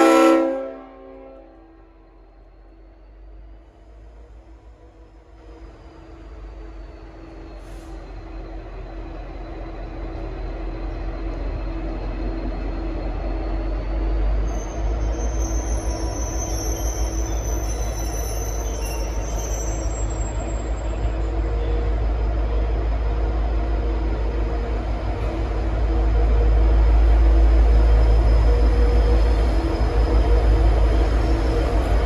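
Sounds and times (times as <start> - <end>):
diesel locomotive running: 0.0 - 32.0
high wheel squeal: 7.2 - 22.0, 27.0 - 32.0.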